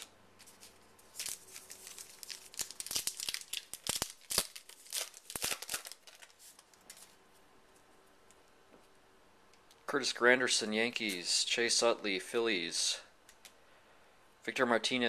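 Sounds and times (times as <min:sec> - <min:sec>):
foil wrapper tearing and crinkling: 0:00.0 - 0:06.7.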